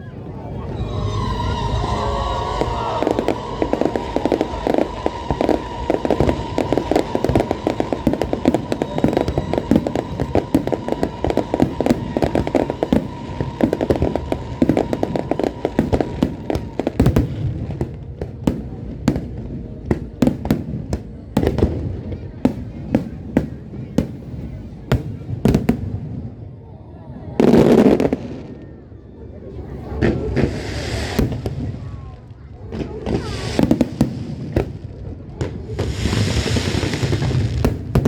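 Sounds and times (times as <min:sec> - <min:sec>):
steady high tone: 0:00.0 - 0:15.8
fireworks crackling bangs: 0:00.5 - 0:26.4, 0:29.9 - 0:38.0.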